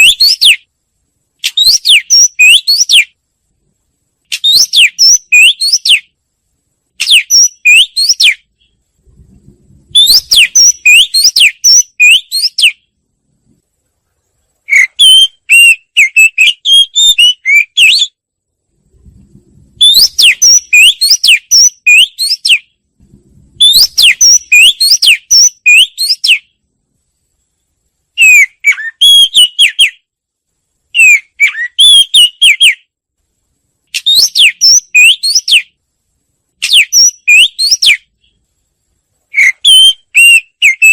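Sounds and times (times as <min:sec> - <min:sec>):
bird song whistled notes: 0:00.0 - 0:00.7, 0:01.4 - 0:03.2, 0:04.3 - 0:06.2, 0:07.0 - 0:08.8, 0:09.9 - 0:12.9, 0:14.6 - 0:18.2, 0:19.8 - 0:22.8, 0:23.6 - 0:26.6, 0:28.2 - 0:30.1, 0:30.9 - 0:32.9, 0:33.9 - 0:35.8, 0:36.6 - 0:38.4, 0:39.3 - 0:40.9.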